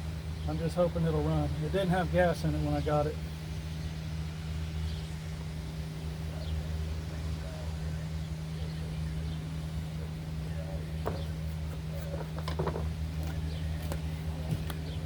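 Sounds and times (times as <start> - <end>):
low mechanical hum: 0.0 - 15.0.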